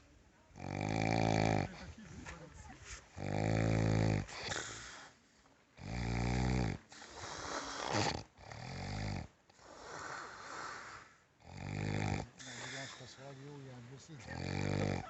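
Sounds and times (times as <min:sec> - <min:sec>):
buzzing snores: 0:00.0 - 0:02.1, 0:03.1 - 0:05.2, 0:05.8 - 0:15.0
breathy out-breath: 0:04.2 - 0:05.2, 0:12.4 - 0:13.5.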